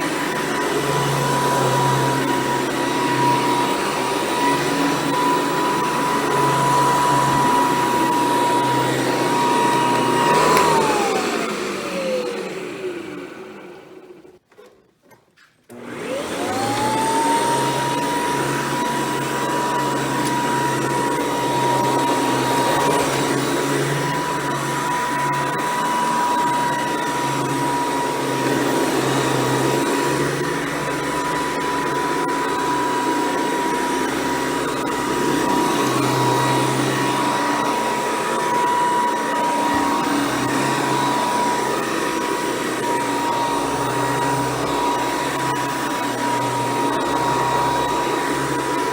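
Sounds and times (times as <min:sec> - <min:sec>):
vacuum cleaner running: 0:00.0 - 0:14.6, 0:15.7 - 0:48.9.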